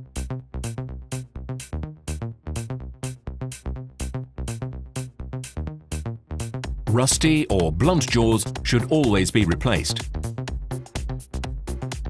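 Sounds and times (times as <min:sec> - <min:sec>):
electronic music with driving beat: 0:06.6 - 0:12.0.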